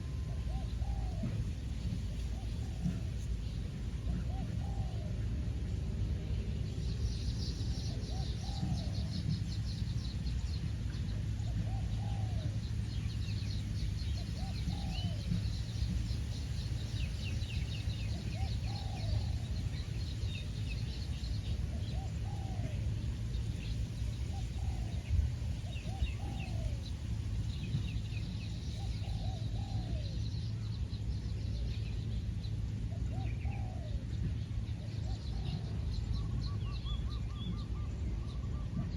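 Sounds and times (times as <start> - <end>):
steady low rumble: 0.0 - 38.9
small birds chirping: 6.7 - 38.9.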